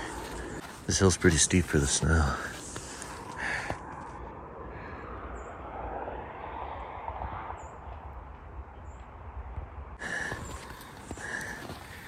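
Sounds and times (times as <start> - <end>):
small birds chirping: 0.0 - 3.8, 10.0 - 12.0
steady rushing noise: 0.0 - 12.0.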